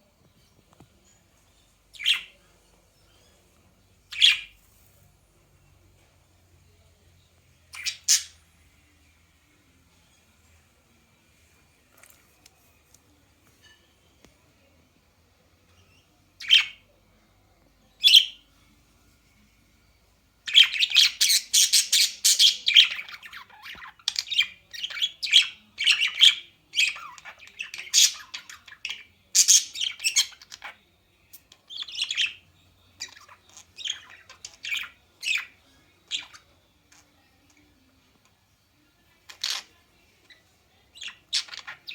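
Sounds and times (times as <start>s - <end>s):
bird chirping: 0.5s - 5.0s, 7.6s - 9.0s, 15.7s - 16.9s, 18.0s - 18.5s, 20.4s - 30.8s, 31.6s - 37.0s, 39.3s - 41.9s.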